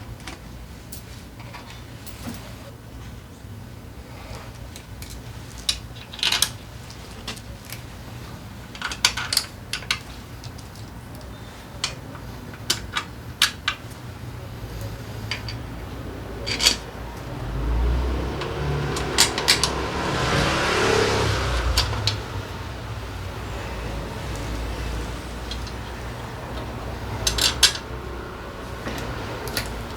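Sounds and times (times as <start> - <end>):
metal tools clinking: 14.8 - 16.9, 24.0 - 28.0, 28.7 - 29.9
whirring rush: 16.9 - 29.9.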